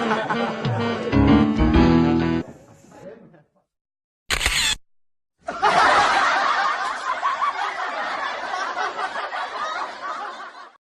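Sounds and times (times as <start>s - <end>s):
crowd laughing: 0.0s - 2.9s, 5.4s - 10.8s.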